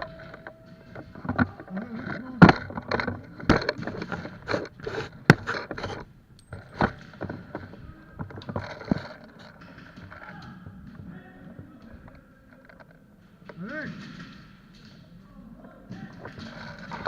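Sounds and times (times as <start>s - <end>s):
knocks and clicks: 0.0s - 15.0s
scraping: 0.0s - 17.0s.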